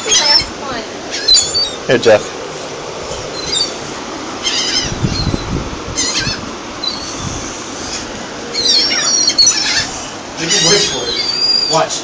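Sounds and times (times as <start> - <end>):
gulls calling: 0.0 - 12.0.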